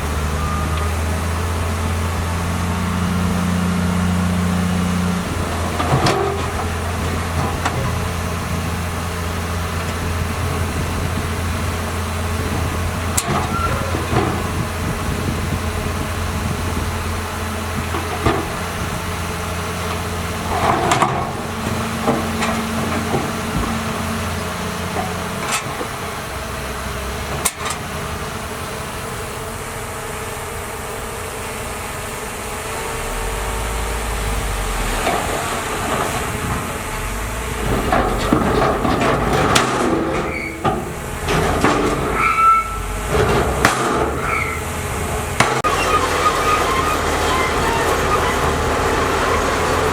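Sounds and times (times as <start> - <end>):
diesel engine running: 0.0 - 49.9
metallic clanks and squeals: 0.2 - 1.1, 12.6 - 16.0, 19.9 - 25.9, 34.9 - 49.9.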